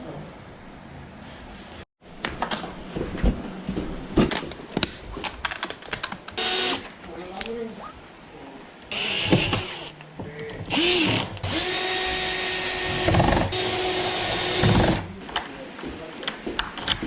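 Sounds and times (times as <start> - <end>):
electric drill motor: 6.4 - 6.9, 8.9 - 9.9, 10.7 - 15.1.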